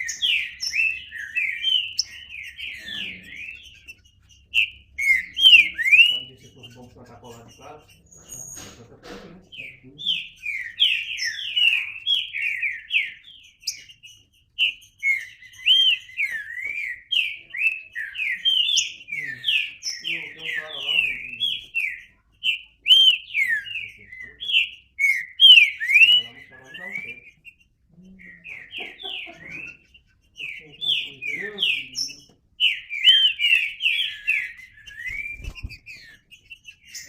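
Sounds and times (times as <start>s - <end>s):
bird singing whistled notes: 0.0s - 8.8s, 9.6s - 37.0s.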